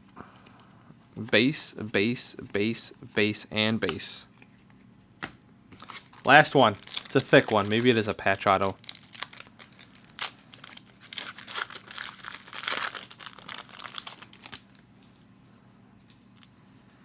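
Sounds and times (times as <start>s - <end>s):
wrapper tearing and crinkling: 5.8s - 14.8s.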